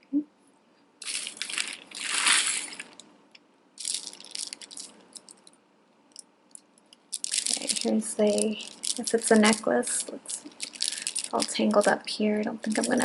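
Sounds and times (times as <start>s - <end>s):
jewelry rattling and clinking: 3.8s - 12.0s.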